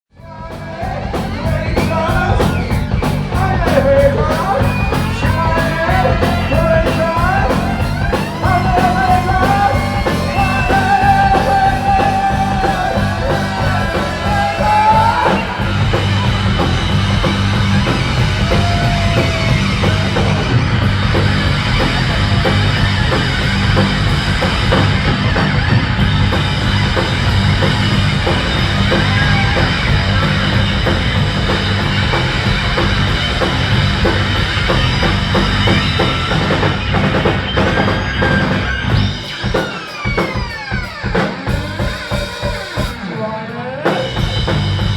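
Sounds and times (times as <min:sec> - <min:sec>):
live rock band playing loud: 0:00.2 - 0:44.9
wailing sliding lead line: 0:00.9 - 0:44.7
held high tones: 0:07.4 - 0:27.0.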